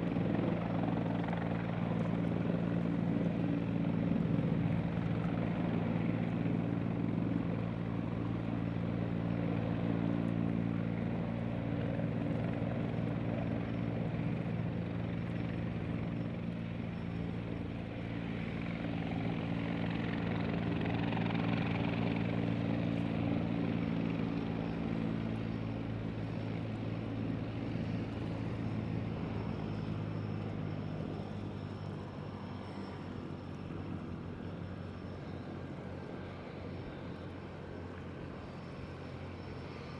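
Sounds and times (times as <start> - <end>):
floatplane engine and propeller: 0.0 - 39.9.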